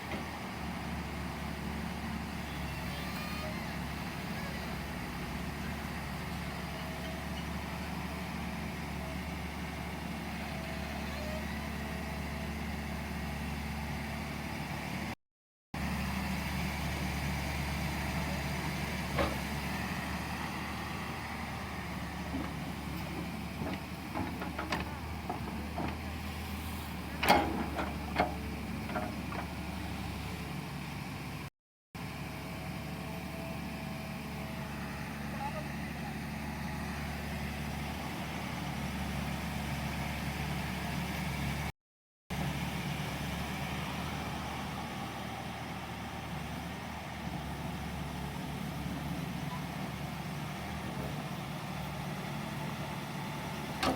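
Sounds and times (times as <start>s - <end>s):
excavator diesel engine running: 0.0s - 15.1s, 15.8s - 41.7s, 42.4s - 53.9s
metallic clanks from excavator bucket: 27.2s - 29.5s.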